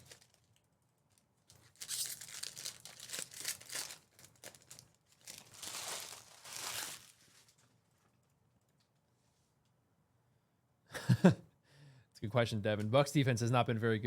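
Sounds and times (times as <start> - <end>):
plastic wrappers crinkling and tearing: 0.0 - 7.7.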